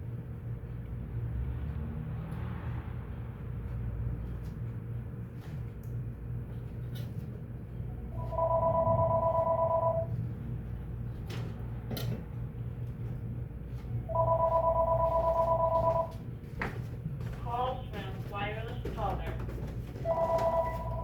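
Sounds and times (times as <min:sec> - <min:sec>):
telephone two-tone ringing: 0:08.2 - 0:10.1, 0:14.1 - 0:16.2, 0:20.1 - 0:21.0.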